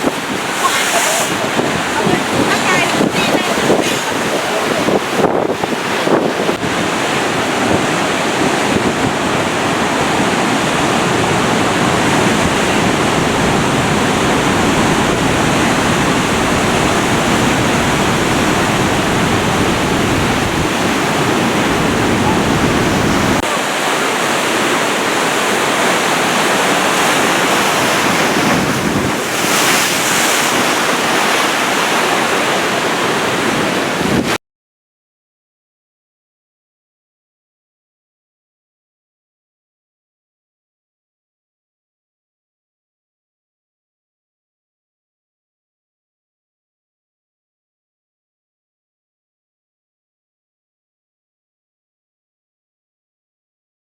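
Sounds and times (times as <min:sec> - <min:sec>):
wind buffeting microphone: 0:00.0 - 0:23.4, 0:26.2 - 0:31.8, 0:33.3 - 0:34.4
surf breaking: 0:00.0 - 0:34.4.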